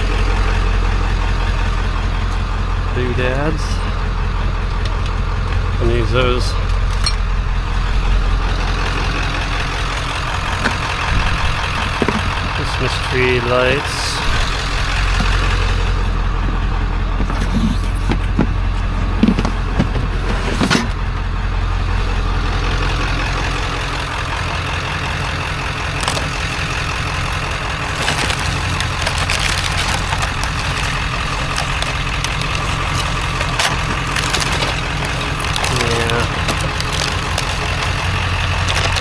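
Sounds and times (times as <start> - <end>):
vehicle engine idling: 0.0 - 39.0
knocks and clinks: 6.7 - 7.3.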